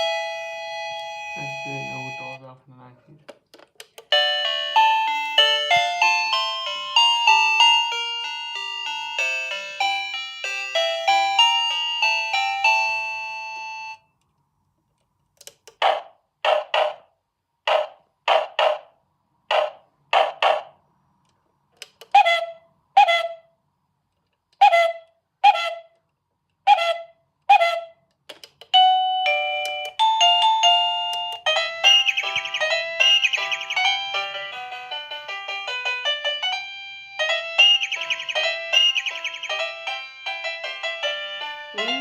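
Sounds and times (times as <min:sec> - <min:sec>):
doorbell chime melody: 0:00.0 - 0:02.5, 0:04.1 - 0:14.1, 0:28.7 - 0:42.0.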